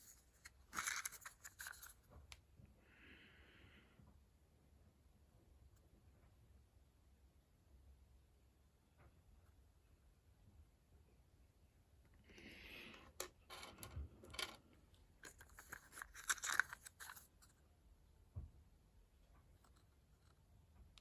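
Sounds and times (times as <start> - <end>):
objects rustling: 0.0 - 2.0, 15.2 - 17.5
small clicks and scrapes: 0.0 - 2.4, 12.9 - 17.6, 19.3 - 21.0.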